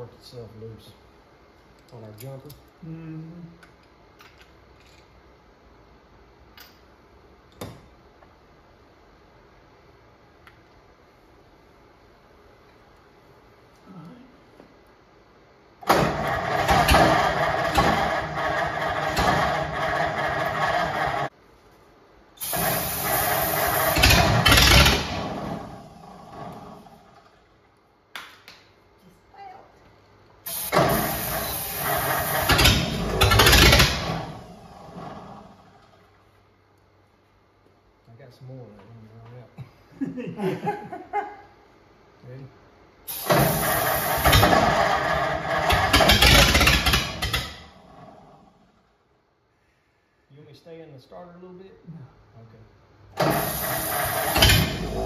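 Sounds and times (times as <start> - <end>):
engine cranking on starter: 15.8 - 21.3, 22.4 - 26.9, 30.5 - 35.4, 43.1 - 47.8, 53.1 - 55.0.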